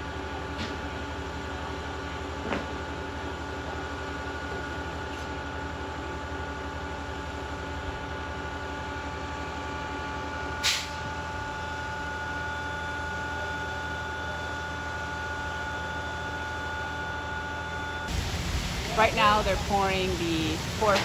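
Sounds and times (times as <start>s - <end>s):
diesel pump engine droning: 0.0s - 21.0s
sharp hissing burst: 18.1s - 21.0s.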